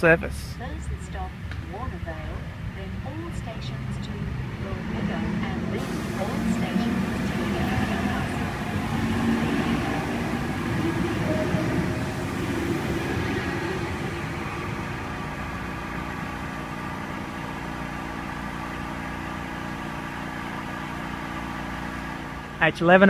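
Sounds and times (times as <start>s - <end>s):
electric train rumble: 0.0s - 23.0s
steady hum with faint tones: 0.0s - 23.0s.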